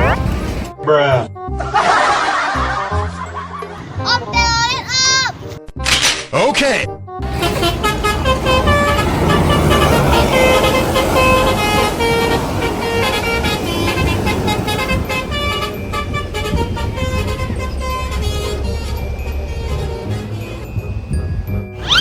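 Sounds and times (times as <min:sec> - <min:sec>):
bus engine rumble: 0:00.0 - 0:00.8, 0:07.2 - 0:22.0
multi-tone air horn tune: 0:07.2 - 0:21.0.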